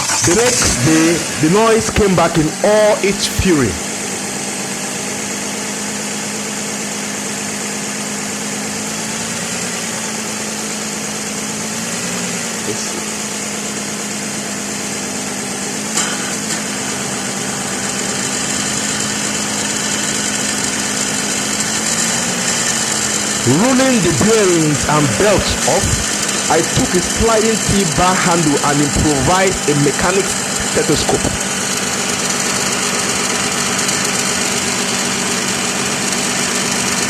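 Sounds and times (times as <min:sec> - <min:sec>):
car engine running: 0:00.0 - 0:04.2, 0:16.2 - 0:36.8.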